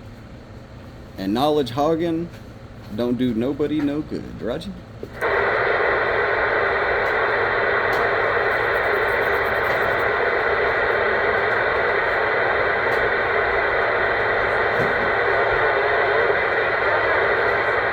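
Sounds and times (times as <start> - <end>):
radio static: 5.2 - 17.9.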